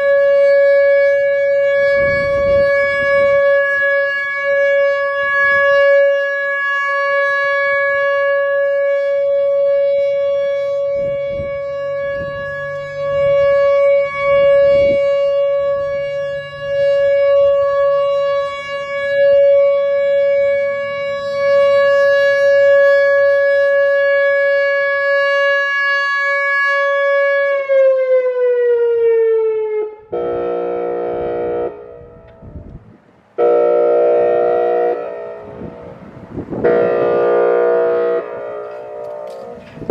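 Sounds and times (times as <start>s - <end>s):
warning siren steady tone: 0.0s - 39.9s
harsh buzzy airhorn blasts: 30.1s - 32.6s, 33.4s - 39.9s.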